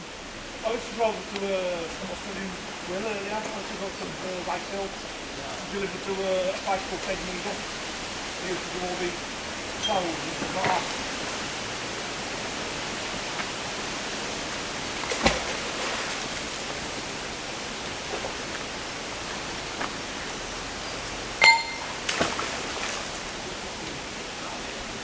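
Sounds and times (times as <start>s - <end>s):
steady background hiss: 0.0s - 25.0s
sharp metallic clinks: 21.4s - 22.0s.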